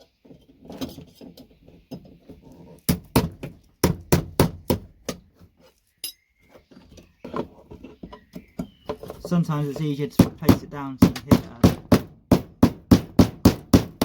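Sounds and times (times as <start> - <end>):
sharp knocks on metal: 2.9 - 5.2, 10.2 - 14.0.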